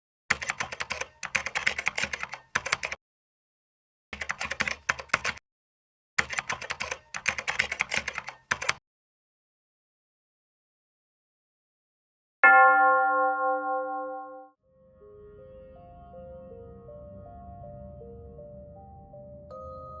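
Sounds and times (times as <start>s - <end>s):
keyboard typing clicks: 0.3s - 3.0s, 4.2s - 5.4s, 6.2s - 8.8s.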